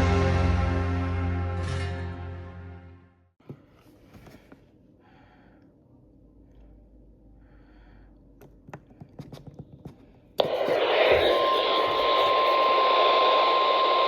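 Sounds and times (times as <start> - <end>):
faint low hum: 3.5 - 9.0.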